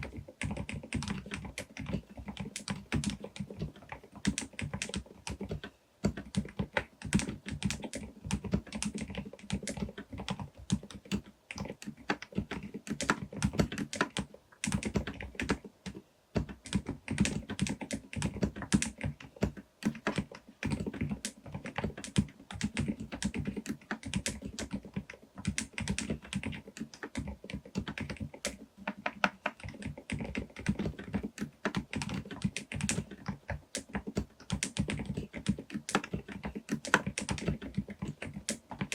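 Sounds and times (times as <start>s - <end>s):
typing on mechanical keyboard: 0.0s - 38.9s.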